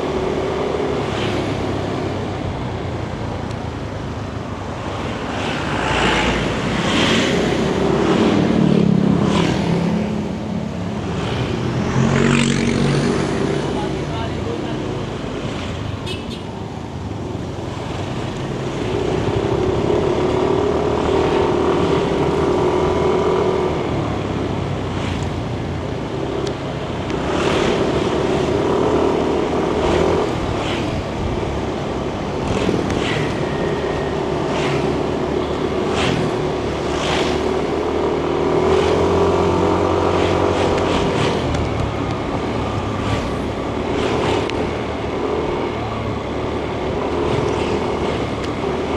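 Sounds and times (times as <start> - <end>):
short sharp road noises: 0.0 - 48.9.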